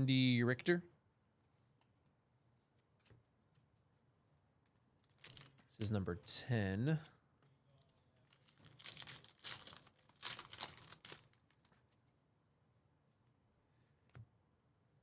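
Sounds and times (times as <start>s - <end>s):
plastic wrapper tearing and crinkling: 5.0s - 5.6s, 8.2s - 11.8s.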